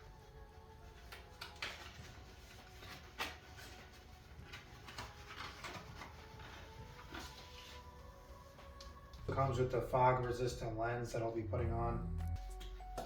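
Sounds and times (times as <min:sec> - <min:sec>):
packaging and helmet parts handled: 0:00.0 - 0:09.3.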